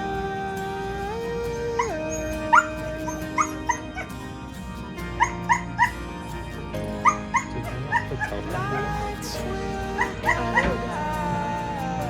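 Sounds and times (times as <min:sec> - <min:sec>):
background music: 0:00.0 - 0:12.0.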